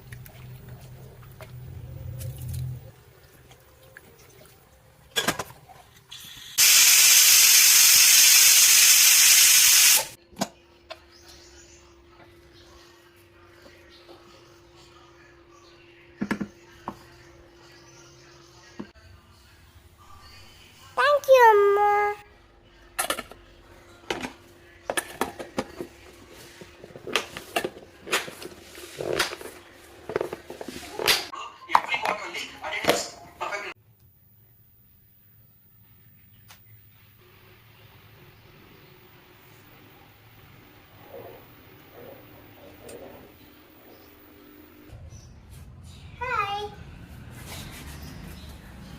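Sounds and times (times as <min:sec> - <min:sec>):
utensils and dishes clinking: 0:05.1 - 0:05.9
steam hissing: 0:06.3 - 0:10.2.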